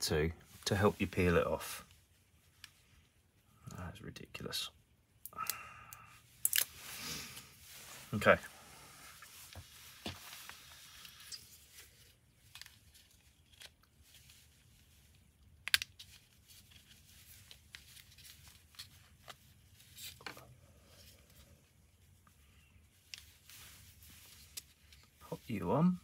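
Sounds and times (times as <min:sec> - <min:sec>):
plastic clicks and crinkles: 0:12.4 - 0:14.5, 0:15.1 - 0:20.4.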